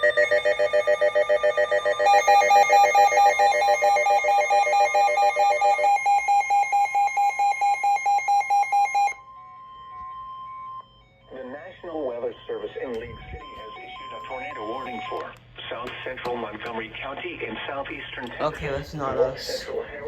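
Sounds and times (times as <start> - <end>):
rapid multi-tone beeping: 0.0 - 15.3
steady alarm tone: 0.0 - 15.3.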